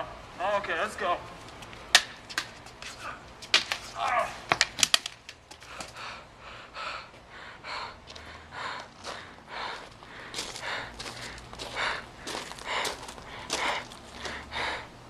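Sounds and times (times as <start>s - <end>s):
sharp clicks and scuffs: 1.4s - 6.0s
person breathing hard: 5.5s - 15.0s.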